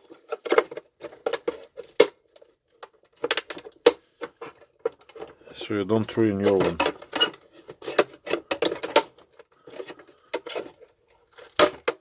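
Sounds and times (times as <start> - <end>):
plastic cracking: 0.0 - 12.0.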